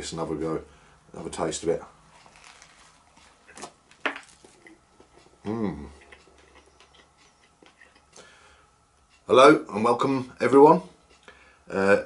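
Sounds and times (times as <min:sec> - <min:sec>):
man humming mmm: 0:05.4 - 0:06.2.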